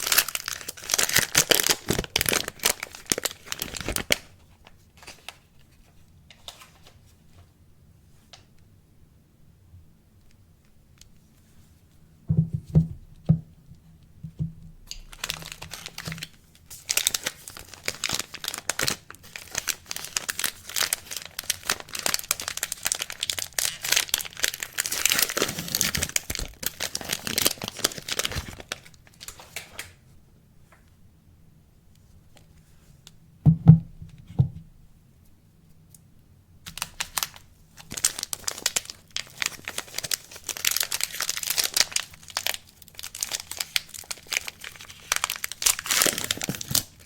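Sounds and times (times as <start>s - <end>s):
wrapping tearing and crinkling: 0.0s - 7.0s, 14.9s - 30.0s, 36.6s - 47.0s.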